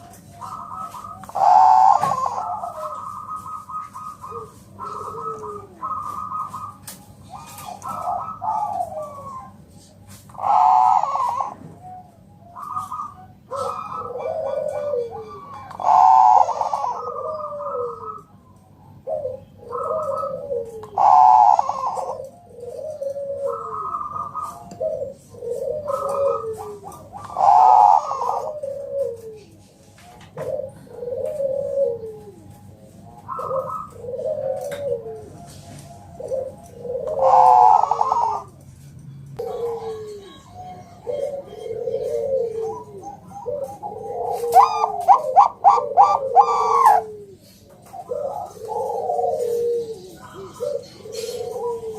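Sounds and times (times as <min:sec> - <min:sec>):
dove cooing: 0:00.0 - 0:51.9.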